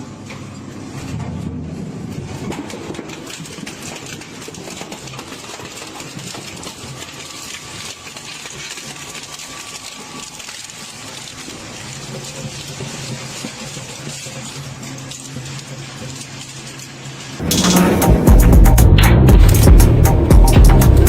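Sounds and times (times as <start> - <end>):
hydraulic press humming: 17.4 - 21.0.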